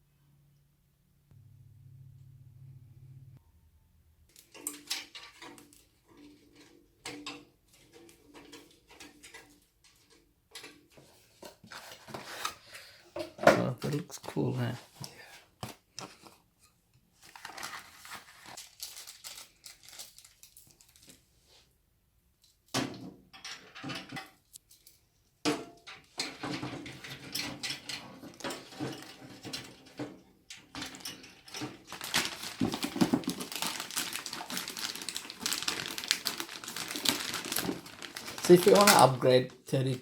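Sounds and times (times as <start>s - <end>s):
clicks and knocks of handled parts: 4.3s - 12.1s, 22.4s - 39.1s
packaging crinkling and rustling: 17.2s - 21.2s, 30.7s - 40.0s.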